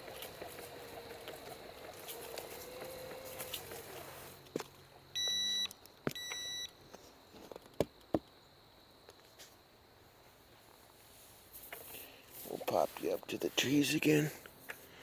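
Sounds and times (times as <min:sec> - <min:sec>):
faint outdoor background: 0:00.0 - 0:15.0
electronic beeps: 0:05.2 - 0:06.8.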